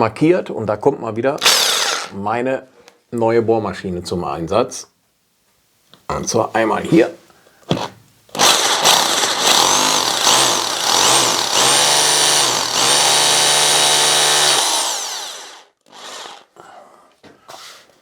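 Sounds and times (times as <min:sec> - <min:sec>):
electric drill boring into wall: 0:01.4 - 0:02.1, 0:08.3 - 0:16.5.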